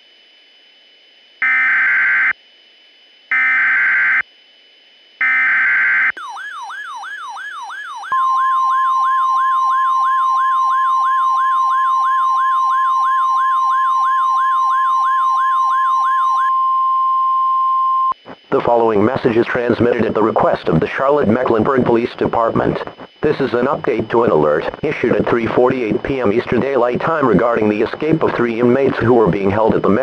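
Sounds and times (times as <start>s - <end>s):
steady warning tone: 0.0s - 30.0s
warbling siren-like sweep: 5.3s - 16.5s.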